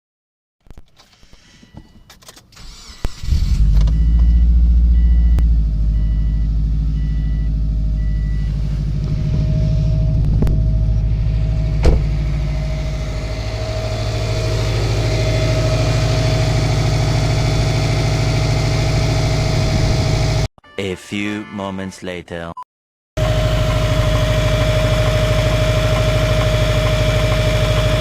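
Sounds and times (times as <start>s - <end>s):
car engine starting and idling: 1.0s - 20.5s, 23.2s - 28.0s
engine knocking: 11.5s - 20.4s, 23.2s - 28.0s.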